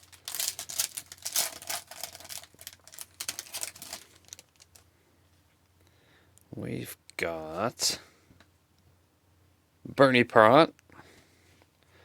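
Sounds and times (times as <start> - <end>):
wrapper tearing and crinkling: 0.0 - 4.8.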